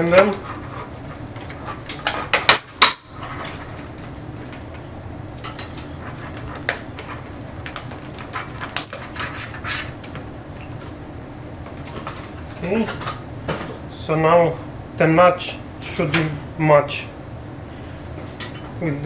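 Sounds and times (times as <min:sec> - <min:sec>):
handling noises: 0:00.0 - 0:13.9.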